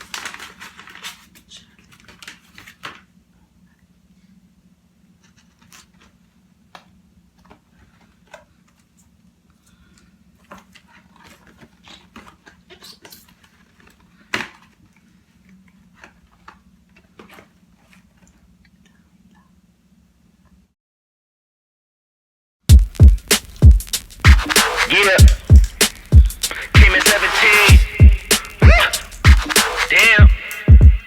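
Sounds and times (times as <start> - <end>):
steady low hum: 22.7 - 31.0.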